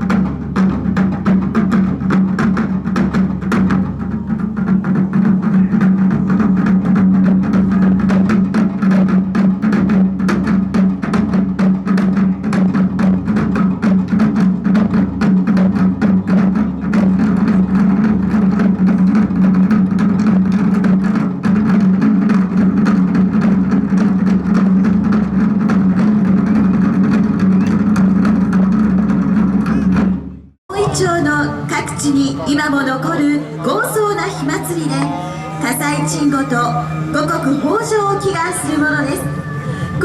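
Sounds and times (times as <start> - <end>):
drums in fast rhythm: 0.0 - 40.0
low drone: 30.8 - 40.0.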